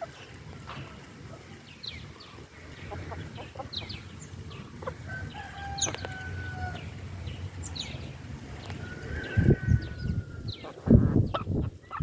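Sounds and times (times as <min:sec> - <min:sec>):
chickens clucking: 0:00.0 - 0:12.0
rooster crowing: 0:05.0 - 0:06.9, 0:08.8 - 0:10.5.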